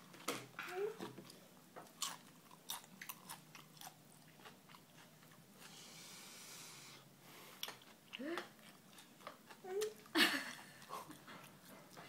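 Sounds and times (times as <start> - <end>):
faint steady hiss: 0.0 - 12.0.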